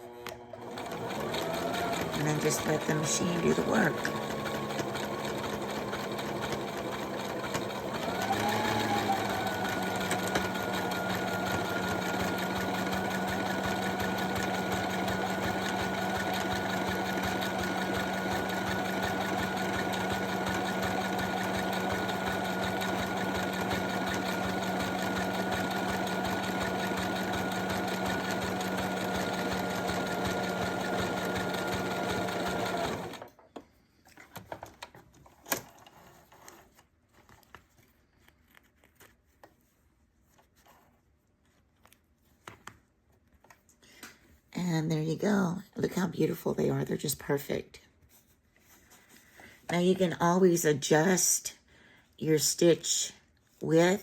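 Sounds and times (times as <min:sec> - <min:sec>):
sewing machine running: 0:00.0 - 0:33.3.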